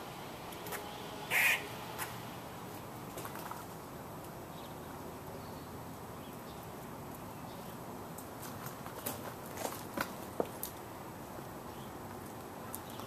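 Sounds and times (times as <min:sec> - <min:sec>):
squirrel call: 0:01.3 - 0:01.7.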